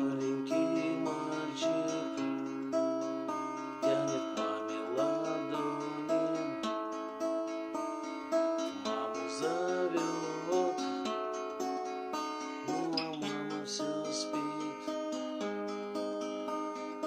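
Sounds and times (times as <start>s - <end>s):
acoustic guitar music: 0.0s - 17.0s.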